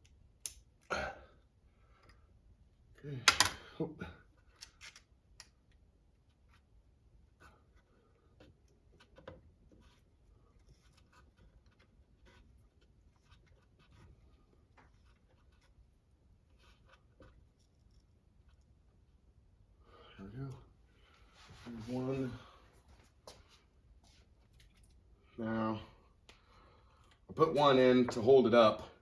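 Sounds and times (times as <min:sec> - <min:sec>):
light clicks and scrapes of tools: 0:04.4 - 0:05.8, 0:22.9 - 0:25.0.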